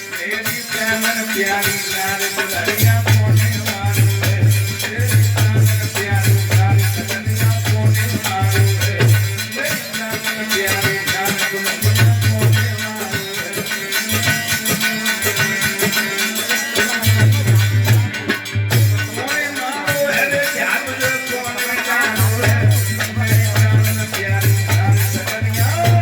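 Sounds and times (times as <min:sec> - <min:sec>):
instrumental folk music: 0:00.0 - 0:26.0.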